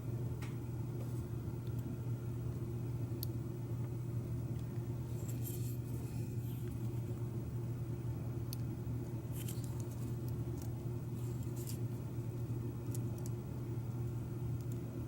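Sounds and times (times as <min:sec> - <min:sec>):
low background hum: 0:00.0 - 0:15.0.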